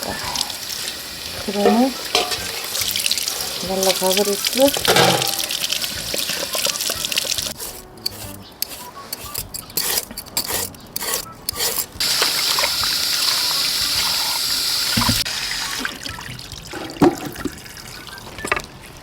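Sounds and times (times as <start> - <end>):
running water rushing: 0.0 - 7.8, 12.0 - 17.3
water trickling and splashing: 0.0 - 8.4, 12.0 - 19.0.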